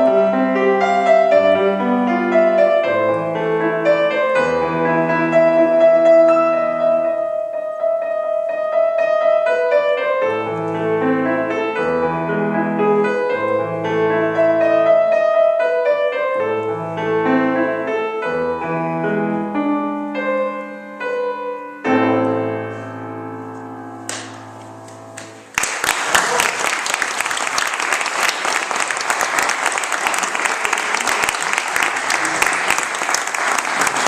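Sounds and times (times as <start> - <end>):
solo piano classical piece: 0.0 - 25.6.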